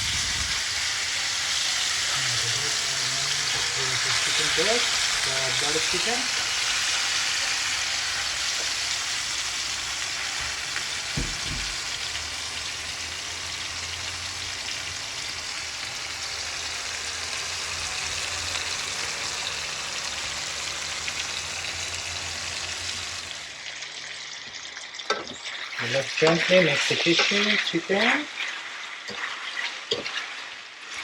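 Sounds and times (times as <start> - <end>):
chicken sizzling in hot oil: 0.0 - 31.0
knock: 11.2 - 11.8.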